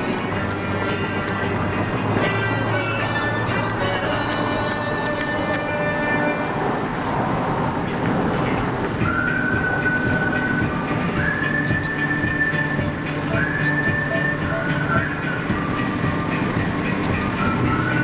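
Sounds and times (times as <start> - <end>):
car road and wind noise: 0.0 - 18.0
steady high tone: 9.0 - 18.0.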